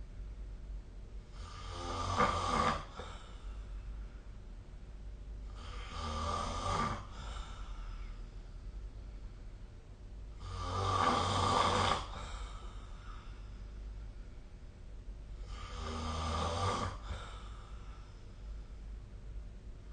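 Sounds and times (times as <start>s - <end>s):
low steady hum: 0.0s - 19.9s
person snoring: 1.3s - 3.2s, 5.5s - 7.9s, 10.4s - 13.3s, 15.4s - 17.8s.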